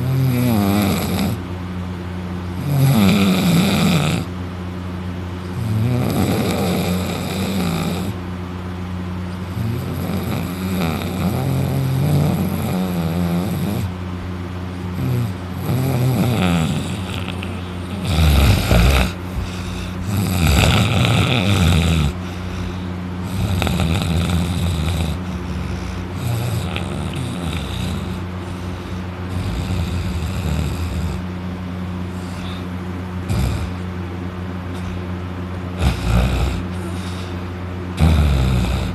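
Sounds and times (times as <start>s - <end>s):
person snoring loudly: 0.0s - 1.4s, 2.6s - 4.3s, 5.5s - 8.2s, 9.4s - 14.0s, 14.9s - 31.3s, 32.1s - 33.9s, 35.8s - 37.4s, 38.0s - 38.9s.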